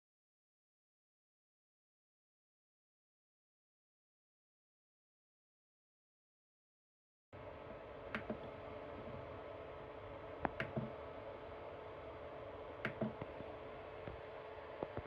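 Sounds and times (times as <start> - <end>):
steady machine hum: 7.4 - 15.0
sharp clicks: 12.8 - 13.3.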